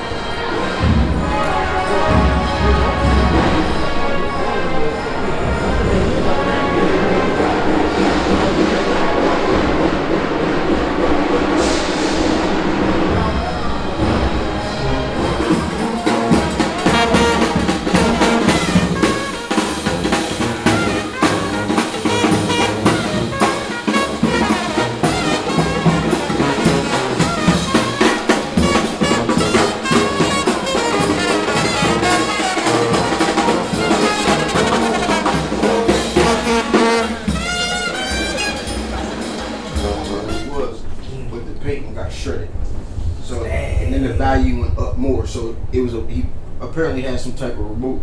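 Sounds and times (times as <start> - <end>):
drums: 0.0 - 4.4, 5.3 - 46.6
trumpet: 0.0 - 9.7, 11.2 - 41.0
trombone: 0.0 - 9.9, 13.8 - 41.0.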